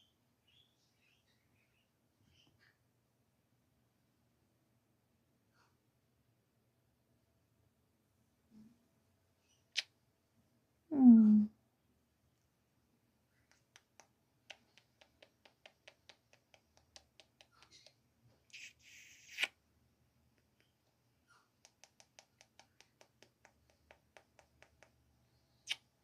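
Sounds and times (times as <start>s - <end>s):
parrot clicking: 13.5s - 18.0s, 21.6s - 25.0s.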